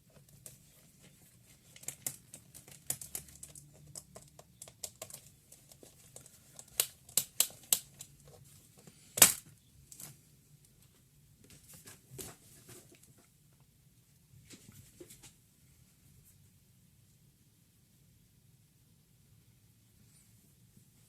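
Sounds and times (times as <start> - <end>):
tools and plastic parts clicking: 1.6 - 8.3.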